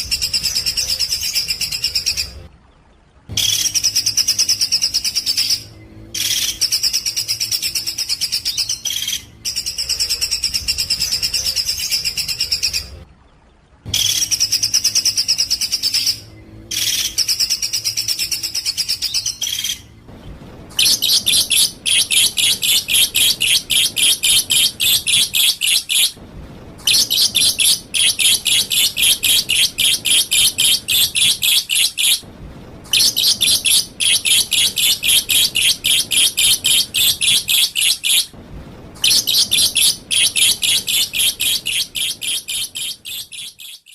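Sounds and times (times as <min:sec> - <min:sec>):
songbird chattering song: 0:39.0 - 0:43.9.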